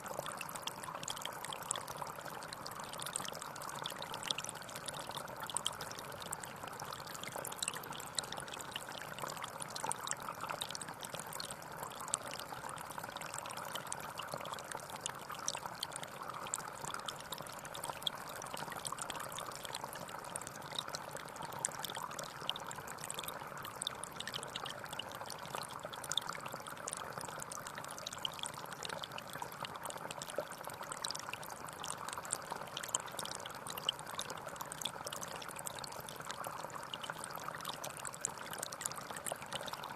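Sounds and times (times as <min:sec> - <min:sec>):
water trickling and pouring: 0:00.0 - 0:39.9.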